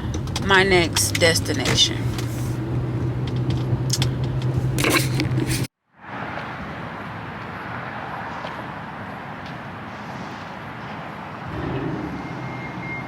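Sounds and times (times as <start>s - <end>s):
car engine and road hum: 0.0s - 13.0s
clicks and rustles: 3.2s - 5.7s.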